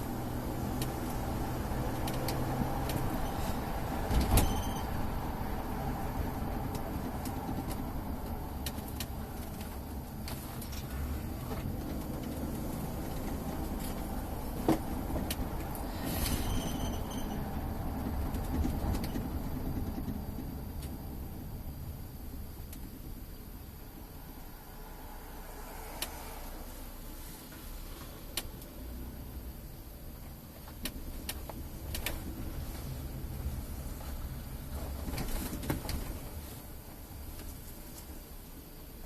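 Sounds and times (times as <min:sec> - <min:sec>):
car engine and road rumble: 0:00.0 - 0:39.0.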